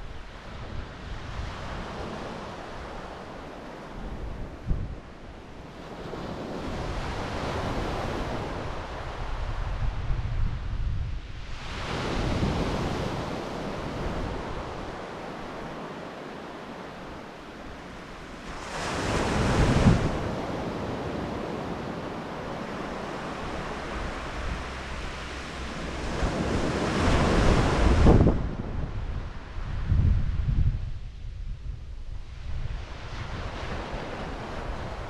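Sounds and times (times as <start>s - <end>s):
wind buffeting microphone: 3.9s - 15.8s, 17.7s - 35.0s
sea waves breaking on beach: 11.5s - 28.6s.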